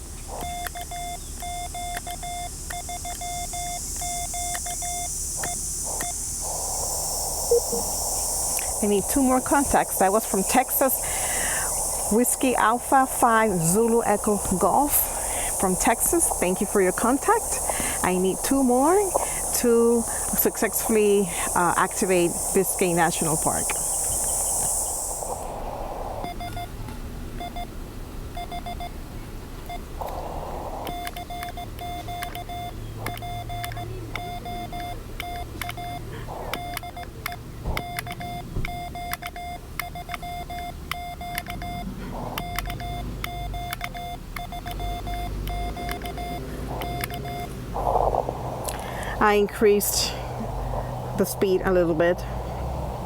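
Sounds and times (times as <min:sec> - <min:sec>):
radio clicks: 0:00.0 - 0:26.6, 0:29.6 - 0:49.9
receiver hiss: 0:00.0 - 0:53.0
morse code tone: 0:00.3 - 0:25.6, 0:37.7 - 0:50.1.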